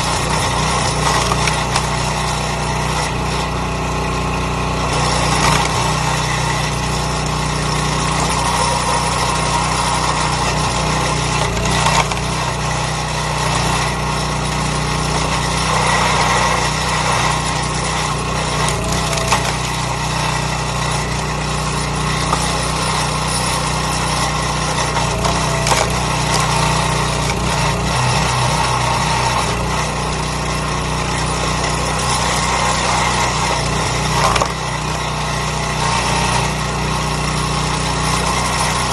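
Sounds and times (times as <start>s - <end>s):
small gas engine running: 0.0s - 38.9s
wood cracking: 16.7s - 20.5s, 23.2s - 30.8s.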